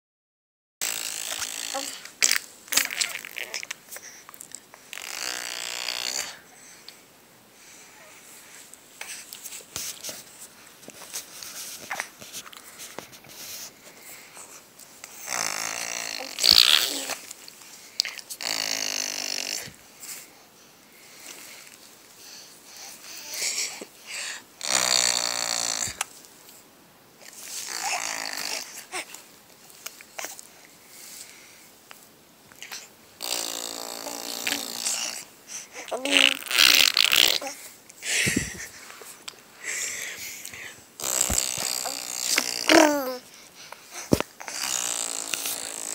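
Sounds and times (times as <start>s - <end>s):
lips blowing raspberries: 0.8s - 6.4s, 15.0s - 17.3s, 18.0s - 19.8s, 24.6s - 26.1s, 27.2s - 28.8s, 32.6s - 38.8s, 39.6s - 43.2s, 44.0s - 45.9s.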